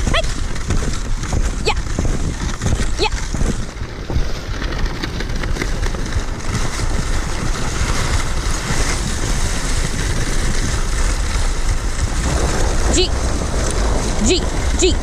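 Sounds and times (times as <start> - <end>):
sled runners hissing over snow: 0.0 - 15.0
wind buffeting microphone: 0.0 - 15.0.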